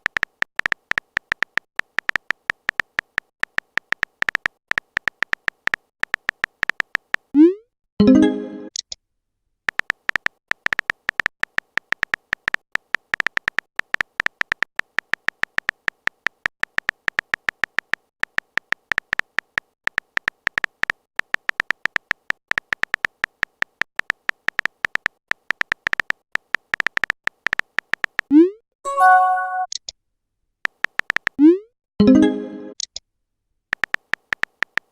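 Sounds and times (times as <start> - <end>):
short high keyboard beeps: 28.9 - 29.8.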